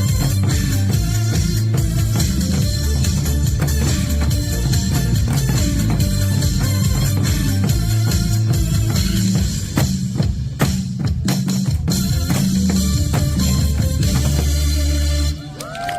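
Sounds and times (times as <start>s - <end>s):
dance beat with heavy bass: 0.0s - 9.8s
janggu drums: 0.0s - 15.4s.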